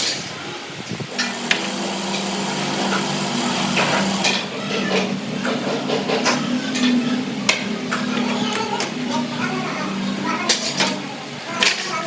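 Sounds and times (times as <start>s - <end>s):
workshop machine hum: 0.8s - 12.0s.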